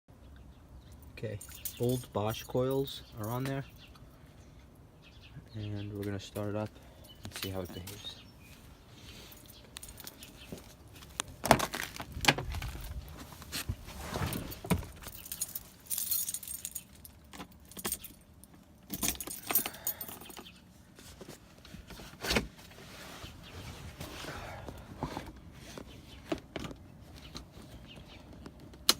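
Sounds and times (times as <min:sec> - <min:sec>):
car keys jangling: 0:01.4 - 0:02.1, 0:14.9 - 0:20.5.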